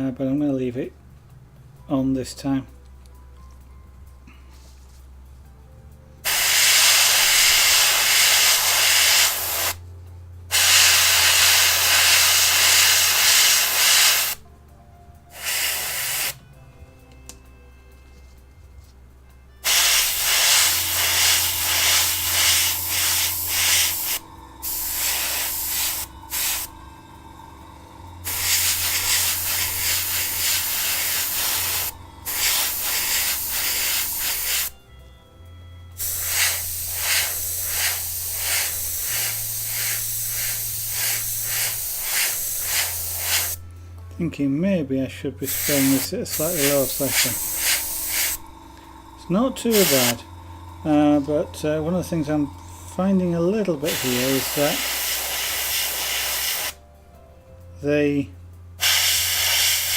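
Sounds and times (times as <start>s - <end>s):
airbrush spraying hiss: 6.2s - 9.8s, 10.5s - 14.4s, 15.3s - 16.4s, 19.6s - 34.8s, 36.0s - 43.6s, 45.4s - 56.8s, 58.8s - 59.9s
low hum: 16.4s - 36.0s, 45.2s - 55.6s.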